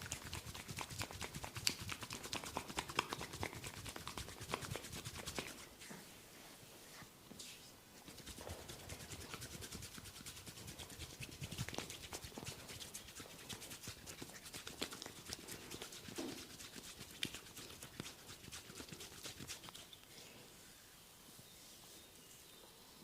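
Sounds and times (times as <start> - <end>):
fingers rubbing skin: 0.0 - 5.8, 8.0 - 20.1.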